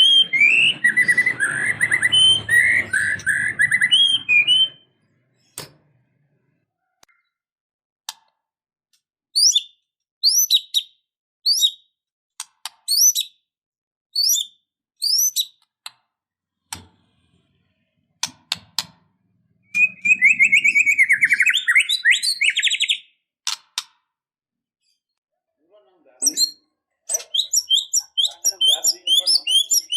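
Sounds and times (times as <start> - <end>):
bird rattling trill: 0.0 - 4.8
bird whistled song: 0.0 - 5.0, 9.3 - 11.9, 12.9 - 13.4, 14.2 - 15.6, 19.6 - 23.2, 26.2 - 29.9.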